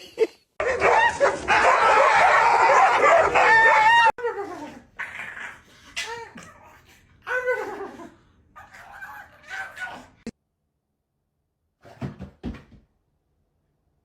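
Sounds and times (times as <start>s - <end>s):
dog barking and whining: 0.6s - 4.7s.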